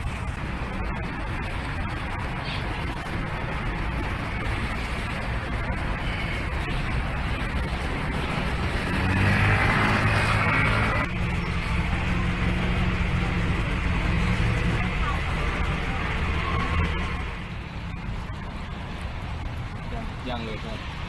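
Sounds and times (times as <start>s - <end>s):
street background noise: 0.0s - 21.0s
vehicle engine: 0.0s - 21.0s.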